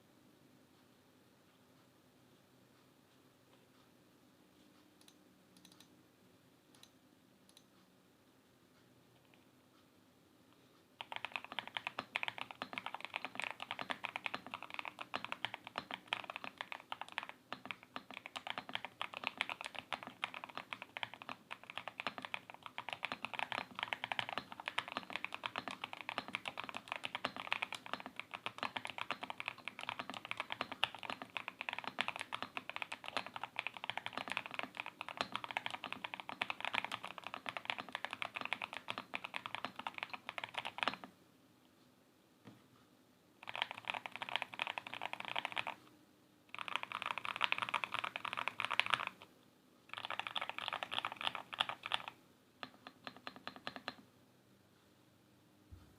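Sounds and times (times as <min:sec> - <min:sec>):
fast typing on mechanical keyboard: 0:11.0 - 0:41.1, 0:43.4 - 0:45.8, 0:46.5 - 0:49.2, 0:49.9 - 0:54.0.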